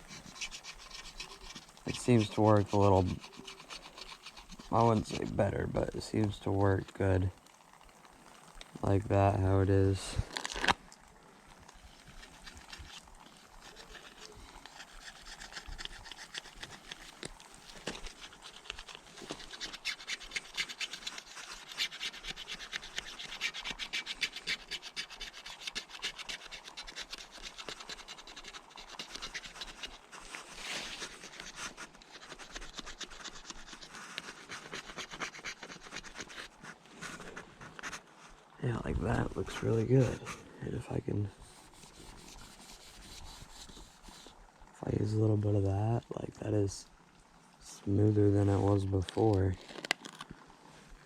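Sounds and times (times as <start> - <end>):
plastic card scraping paint: 0.0 - 7.0, 12.0 - 38.1, 41.4 - 44.3.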